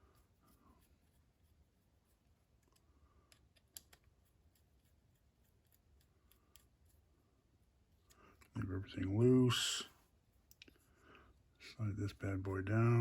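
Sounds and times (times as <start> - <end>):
small parts clicking and tapping: 2.5 - 7.0.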